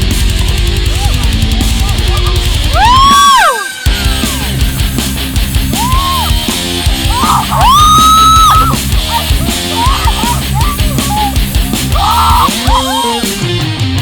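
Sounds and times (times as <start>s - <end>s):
heavy rock music: 0.0s - 14.0s
person yelling vocals: 7.1s - 13.4s.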